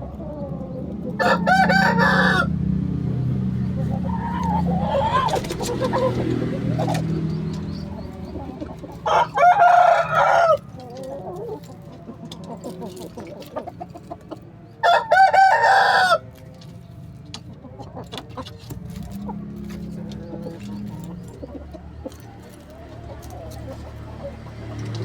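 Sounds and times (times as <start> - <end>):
rooster crowing: 1.2 - 2.6, 9.0 - 10.7, 14.8 - 16.3
soft clucking: 3.6 - 25.0.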